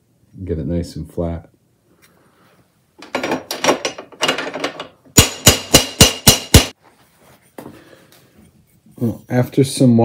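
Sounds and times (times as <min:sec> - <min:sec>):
hammer striking metal: 0:05.2 - 0:06.8.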